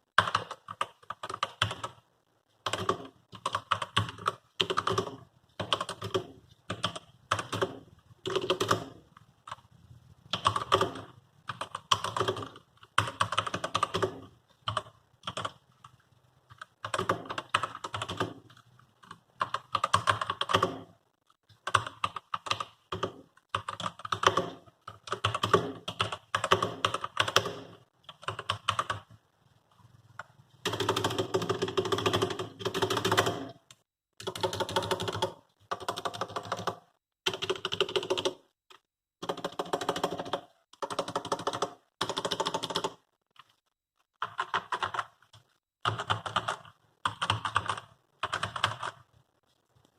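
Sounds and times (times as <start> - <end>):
keyboard keys clicking: 0.2 - 2.0, 2.6 - 9.7, 10.3 - 20.9.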